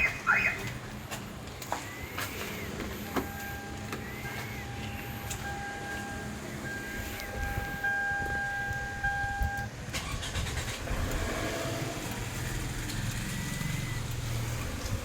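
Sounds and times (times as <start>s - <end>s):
car engine cranking and idling: 0.0s - 15.0s
electronic beep: 1.9s - 9.7s.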